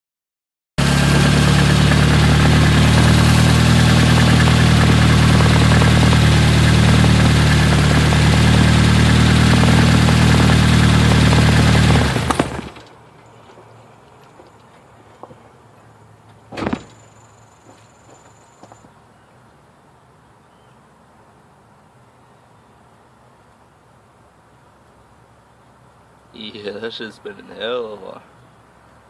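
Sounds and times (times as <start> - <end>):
car engine running: 0.8 - 13.7, 16.4 - 18.8.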